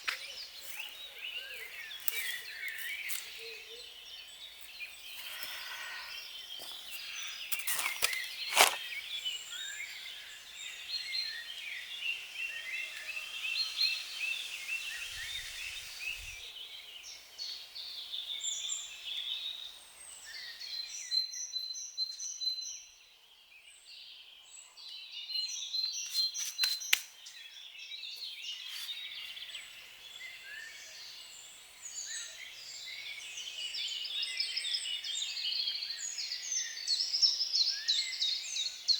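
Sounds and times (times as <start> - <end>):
birds chirping and singing: 0.0 - 21.4.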